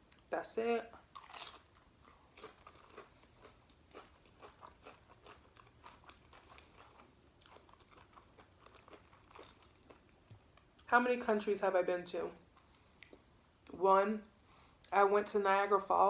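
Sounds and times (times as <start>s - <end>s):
person chewing crunchy food: 1.1s - 10.9s.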